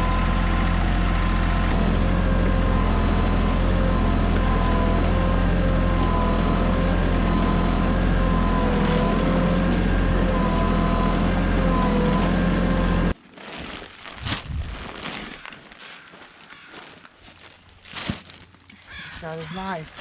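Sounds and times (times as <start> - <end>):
tractor engine rumbling: 0.0 - 20.0
rustling: 13.1 - 20.0.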